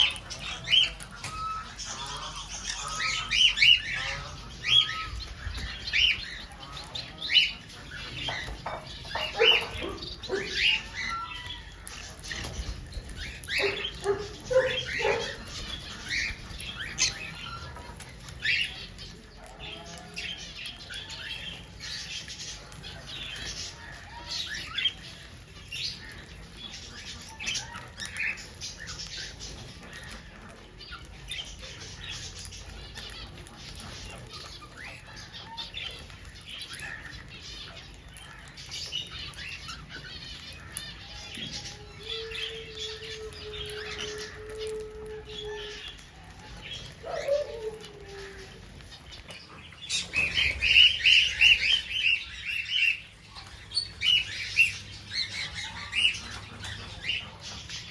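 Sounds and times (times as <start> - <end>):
small birds chirping: 0.0 - 57.9.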